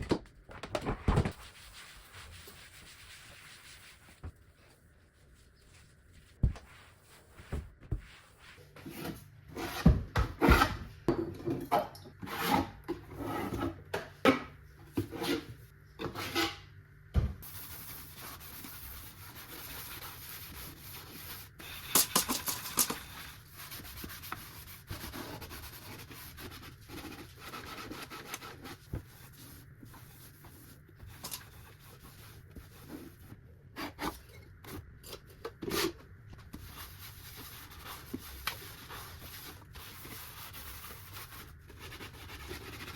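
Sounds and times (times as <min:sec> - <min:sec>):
scrubbing and rubbing: 0:01.4 - 0:04.3.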